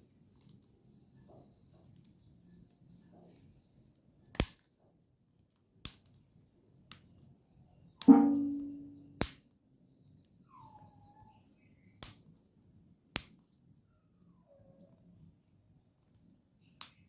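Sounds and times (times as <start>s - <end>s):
low even hum: 8.1s - 9.1s.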